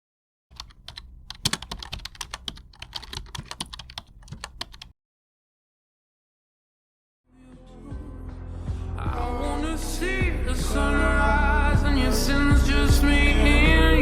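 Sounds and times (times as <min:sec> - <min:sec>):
rapid sharp clicks and taps: 0:00.5 - 0:04.9.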